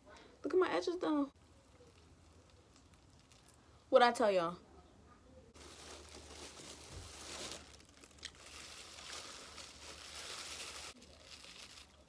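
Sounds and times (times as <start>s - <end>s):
plastic crinkling and rustling: 1.4s - 3.6s, 5.5s - 12.0s.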